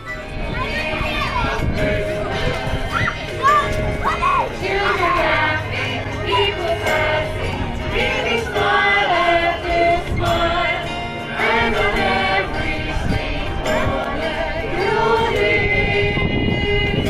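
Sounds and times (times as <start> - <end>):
choir singing a carol: 0.2 - 17.0.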